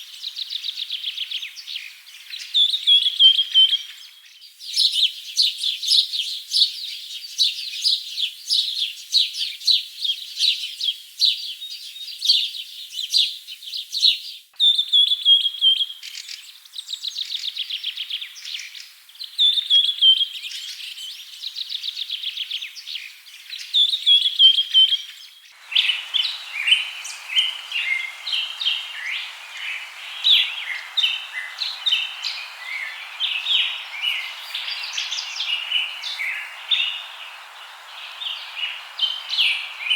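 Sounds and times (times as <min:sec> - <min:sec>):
birds chirping and singing: 0:25.6 - 0:39.9
steady hiss: 0:25.6 - 0:39.9.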